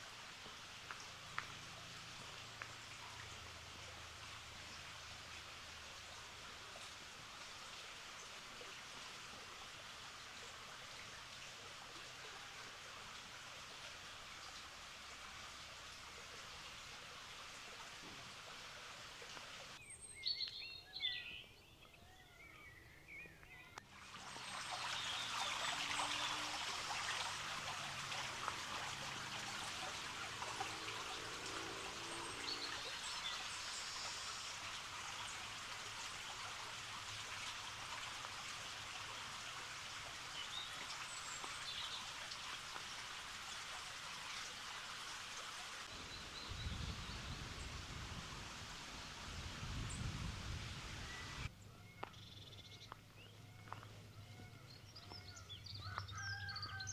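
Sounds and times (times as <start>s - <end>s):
stream running: 0.0s - 20.2s, 23.8s - 51.6s
birds calling: 20.0s - 56.9s.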